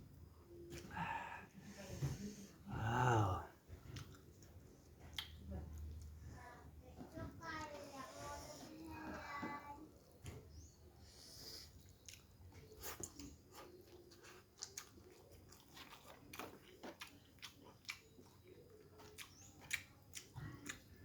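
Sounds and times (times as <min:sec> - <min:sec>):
chewing: 0:03.7 - 0:09.4, 0:11.6 - 0:21.0
wet mouth clicks and smacks: 0:05.1 - 0:05.4.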